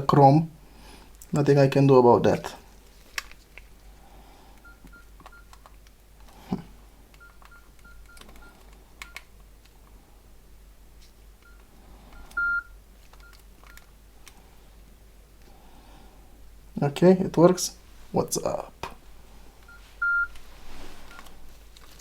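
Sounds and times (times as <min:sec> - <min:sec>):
short high keypad beeps: 0:12.2 - 0:13.4
long loud beep: 0:12.3 - 0:12.7.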